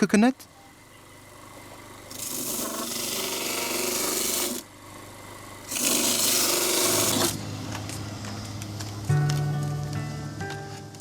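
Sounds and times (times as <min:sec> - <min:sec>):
low steady hum: 0:00.0 - 0:11.0
coconut being grated: 0:02.1 - 0:04.6, 0:05.7 - 0:07.4.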